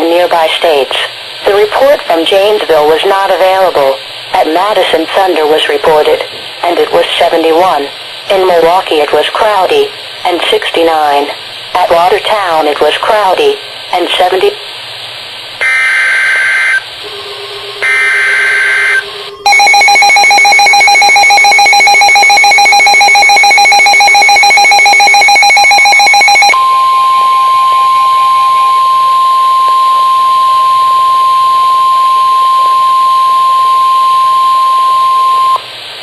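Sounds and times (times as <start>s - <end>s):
screeching digital data bursts: 17.8s - 26.6s.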